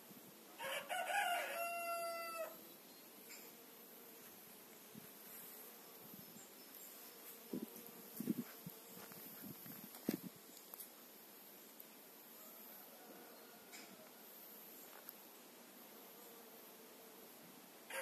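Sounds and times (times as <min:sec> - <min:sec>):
rooster crowing: 0:00.6 - 0:02.6, 0:12.4 - 0:14.2.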